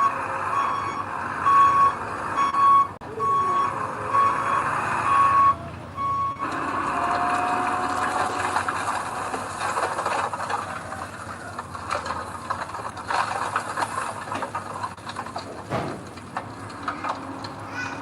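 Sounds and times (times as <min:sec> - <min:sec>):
soil and stones sliding: 0:06.4 - 0:18.0
stones rattling and knocking: 0:08.1 - 0:17.6.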